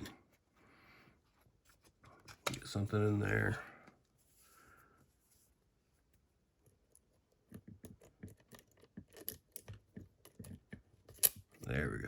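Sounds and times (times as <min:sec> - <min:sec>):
lock picking tools clicking: 0:08.3 - 0:11.5.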